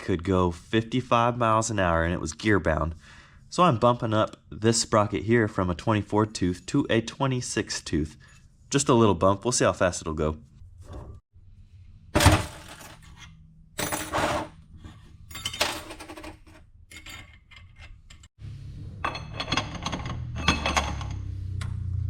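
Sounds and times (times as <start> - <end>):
metal tools clinking: 12.2 - 18.3, 19.0 - 21.3.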